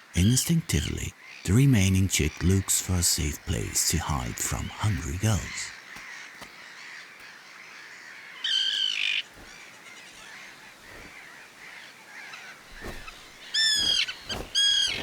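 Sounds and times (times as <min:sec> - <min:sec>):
tern colony calling: 0:00.0 - 0:05.7, 0:12.7 - 0:15.0.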